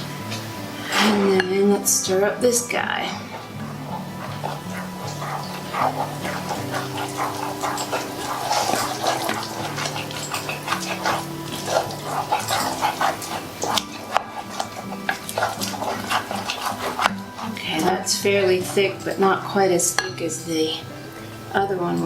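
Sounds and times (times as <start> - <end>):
background music: 0.0 - 22.0
spoon scraping in a jar: 0.3 - 20.3.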